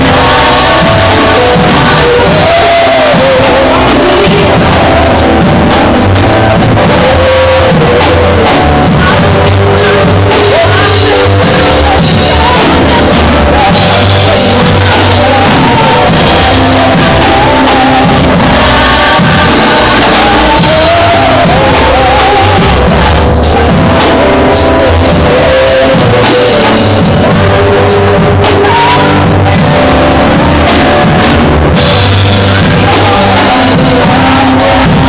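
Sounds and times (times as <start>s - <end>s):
band music with singing: 0.0s - 35.0s
steady drum beat: 0.0s - 35.0s.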